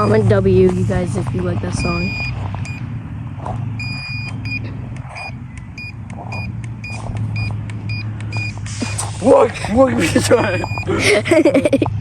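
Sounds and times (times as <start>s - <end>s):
high electronic beeps: 1.6s - 2.9s, 3.7s - 9.4s, 10.2s - 10.9s.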